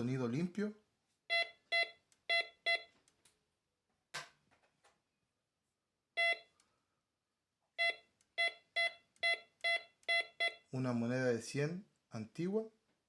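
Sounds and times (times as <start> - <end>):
metal detector beeps: 7.8 - 10.6.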